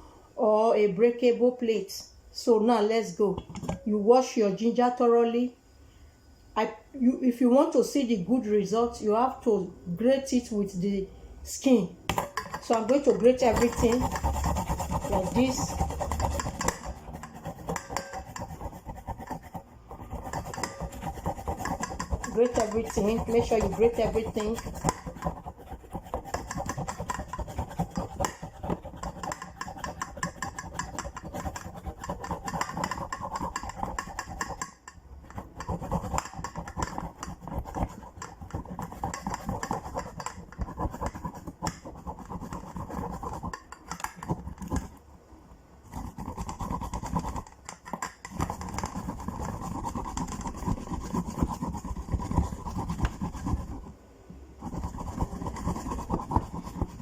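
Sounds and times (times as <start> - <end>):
ginger grated on a grater: 12.4 - 45.0, 45.8 - 53.9, 54.6 - 57.0.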